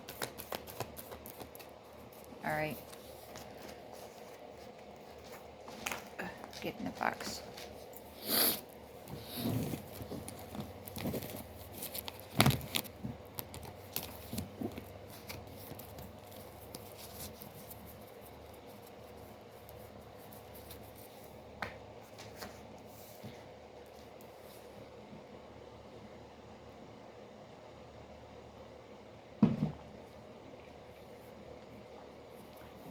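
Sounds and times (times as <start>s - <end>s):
cards being shuffled: 0.0s - 7.8s, 9.2s - 18.2s, 22.1s - 22.7s.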